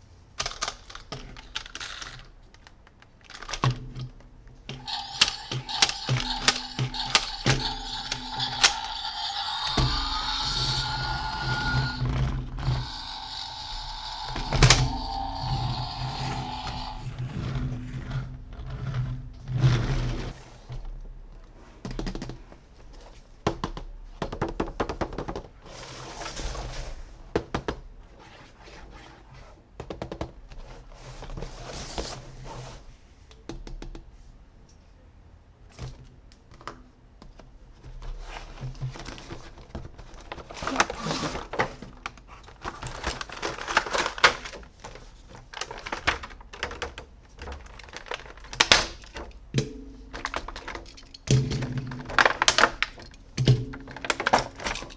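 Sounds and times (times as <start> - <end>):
packaging rustling: 0.4 - 17.2, 39.0 - 54.9
plastic toys clicking and tapping: 0.4 - 17.2, 38.9 - 54.9.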